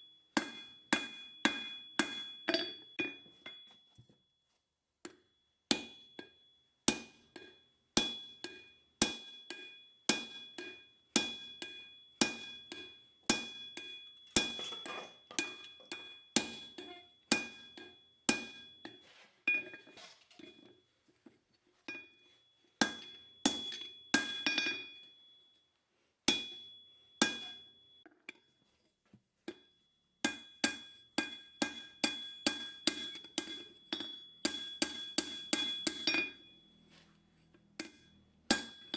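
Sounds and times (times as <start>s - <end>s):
hammer striking steel on anvil: 0.4s - 3.2s, 6.9s - 18.8s, 22.8s - 25.0s, 26.3s - 27.7s, 30.2s - 36.6s, 37.8s - 38.9s.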